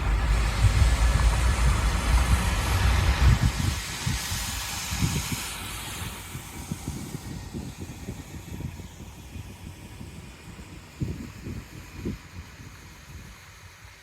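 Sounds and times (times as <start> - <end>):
combine harvester engine rumble: 0.0 - 7.6
hiss: 0.0 - 14.0.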